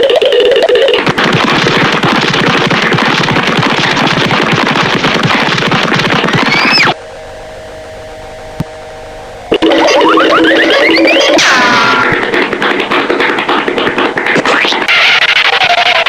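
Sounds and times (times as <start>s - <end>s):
rapid cartoon rattle: 0.0s - 7.0s, 9.5s - 16.0s
rising whistle: 6.5s - 7.2s.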